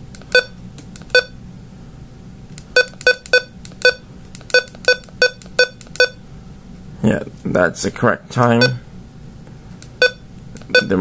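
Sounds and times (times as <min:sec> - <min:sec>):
electronic key-press beeps: 0:00.2 - 0:01.4, 0:02.7 - 0:06.2, 0:10.0 - 0:11.0.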